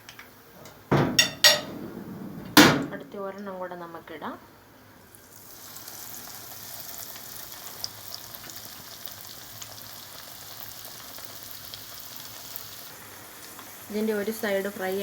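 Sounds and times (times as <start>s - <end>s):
chicken sizzling in hot oil: 5.1s - 15.0s.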